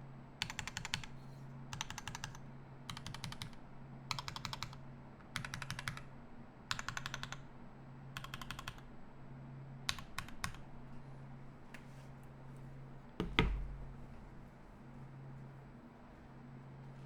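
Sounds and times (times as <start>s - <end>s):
faint low hum: 0.0s - 17.0s
mechanical keyboard typing: 0.4s - 1.1s, 1.7s - 6.1s, 6.7s - 7.4s, 8.2s - 8.8s, 9.9s - 10.6s.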